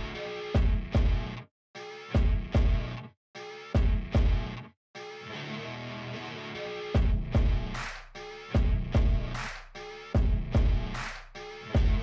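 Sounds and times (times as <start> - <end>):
guitar music: 5.2 - 7.7.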